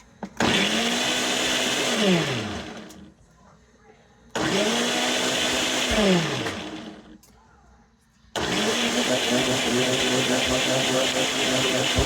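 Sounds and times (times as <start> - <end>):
blender motor running: 0.4 - 3.1, 4.4 - 7.2, 8.4 - 12.0.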